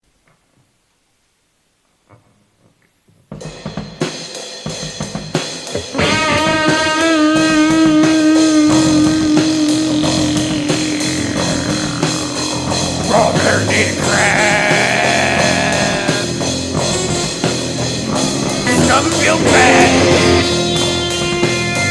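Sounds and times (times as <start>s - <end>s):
hardcore punk rock music: 4.7s - 21.9s.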